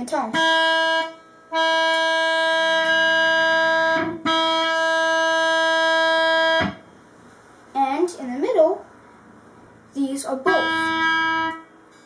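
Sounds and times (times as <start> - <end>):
electric guitar note: 0.4 - 6.9, 10.5 - 11.7.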